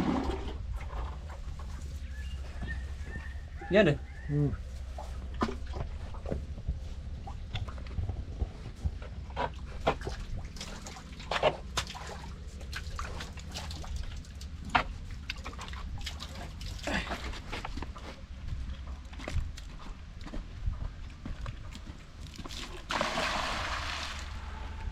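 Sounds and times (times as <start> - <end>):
water dripping and splashing: 9.9 - 17.4, 22.2 - 24.4.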